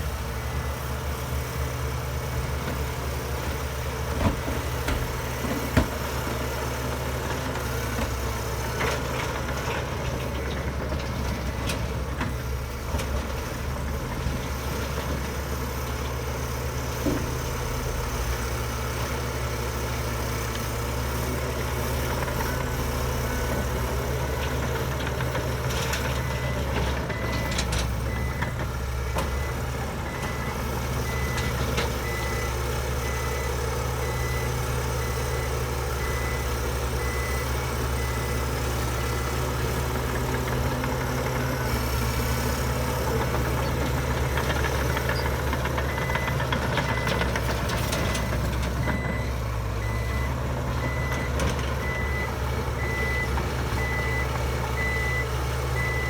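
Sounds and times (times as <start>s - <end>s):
bulldozer diesel engine running: 0.0s - 56.0s
reversing alarm beeping: 21.8s - 41.9s, 43.3s - 56.0s.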